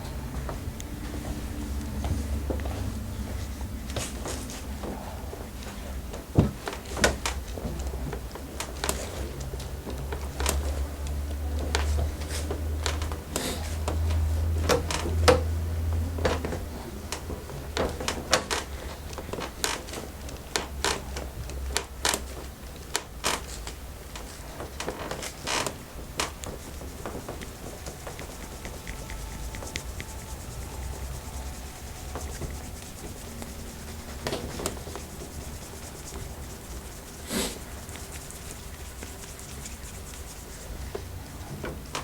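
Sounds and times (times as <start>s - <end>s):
hands massaging skin: 24.2s - 41.3s.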